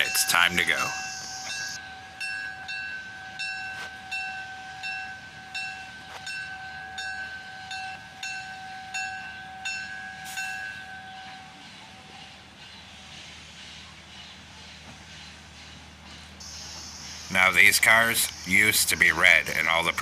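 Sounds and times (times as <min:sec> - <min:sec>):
locomotive bell ringing: 0:00.0 - 0:12.1.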